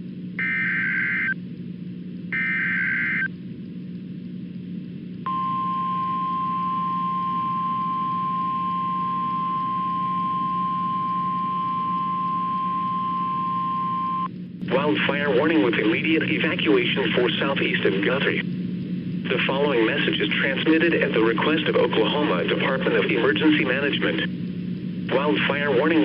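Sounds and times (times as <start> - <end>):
low steady hum: 0.0 - 26.0
buzzing data bursts: 0.4 - 1.4, 2.4 - 3.3, 5.3 - 14.3.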